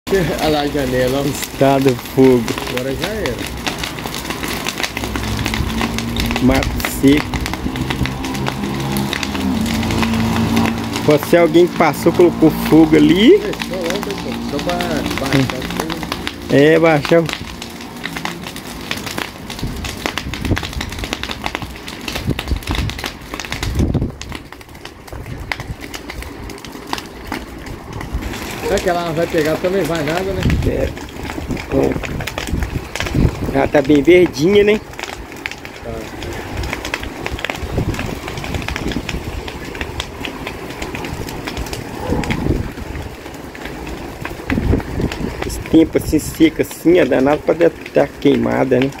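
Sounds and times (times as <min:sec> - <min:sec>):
brush fire crackling: 0:00.1 - 0:49.0
rush of flame: 0:00.1 - 0:49.0
sharp pops: 0:00.3 - 0:49.0
low rumble: 0:00.6 - 0:34.2, 0:34.8 - 0:46.4.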